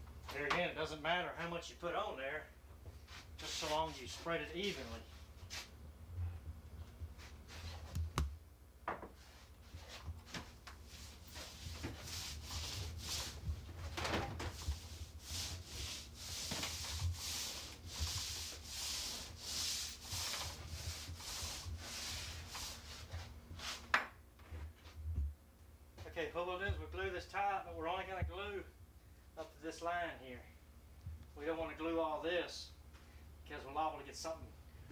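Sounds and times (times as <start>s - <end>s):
applicator rubbing glue on countertop: 14.5s - 23.8s.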